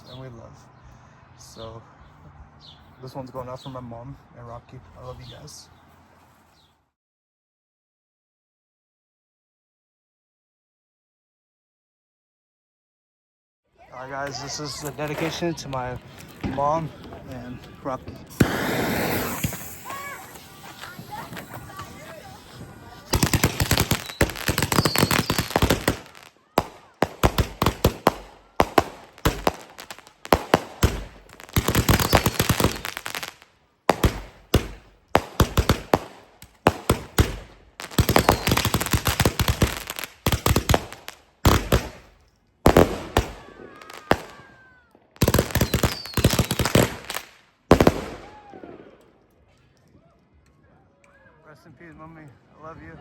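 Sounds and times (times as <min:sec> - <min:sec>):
fireworks bangs and crackling: 0:14.0 - 0:49.2.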